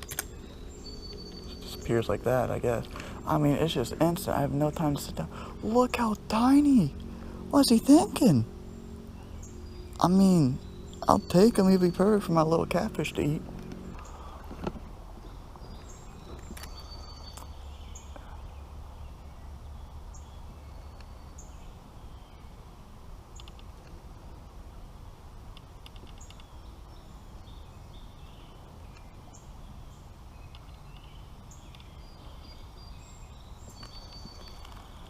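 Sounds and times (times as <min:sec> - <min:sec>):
birds chirping: 0:00.0 - 0:35.0.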